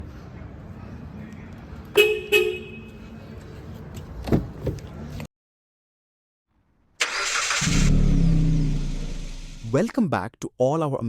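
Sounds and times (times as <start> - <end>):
road traffic noise: 0.0 - 5.3.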